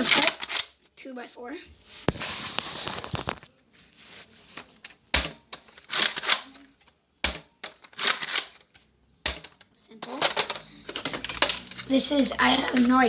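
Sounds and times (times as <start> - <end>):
rattling sliding plastic: 5.7 - 6.5, 7.7 - 8.7, 9.3 - 11.8.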